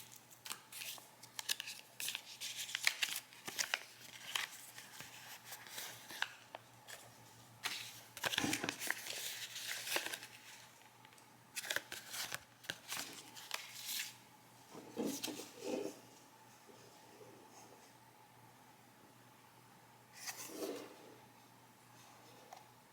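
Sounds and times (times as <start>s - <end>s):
packaging crinkling and tearing: 0.0s - 7.0s, 7.6s - 10.6s, 11.6s - 14.2s.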